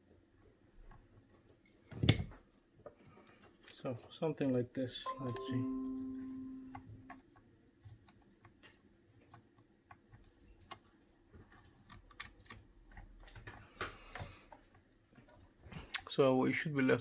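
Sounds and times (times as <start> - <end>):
ringing tone: 5.1 - 7.2.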